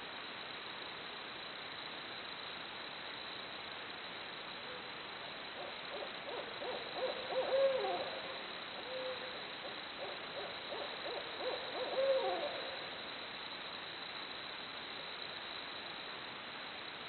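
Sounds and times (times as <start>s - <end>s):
steady hiss: 0.0s - 17.0s
owls hooting: 5.6s - 8.2s, 8.8s - 9.3s, 10.0s - 12.8s.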